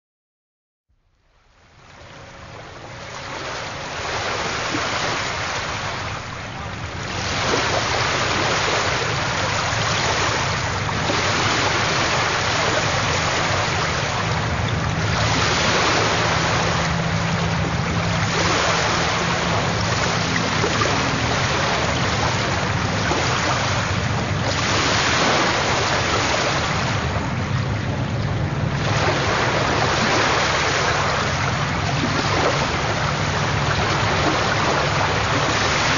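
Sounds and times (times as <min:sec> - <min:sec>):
waves washing in: 0:01.2 - 0:35.9.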